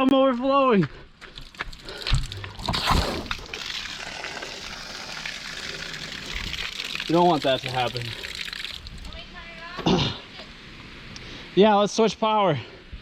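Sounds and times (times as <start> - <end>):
water pouring and splashing: 1.4 - 9.3.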